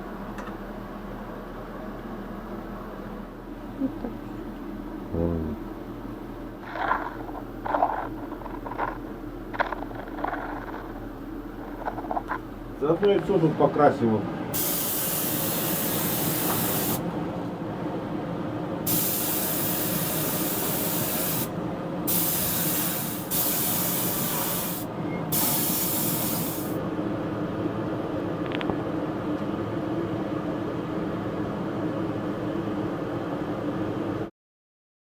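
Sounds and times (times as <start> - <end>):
steady low hum: 0.0 - 34.3
paint spraying hiss: 14.6 - 17.0, 18.9 - 21.5, 22.1 - 26.8.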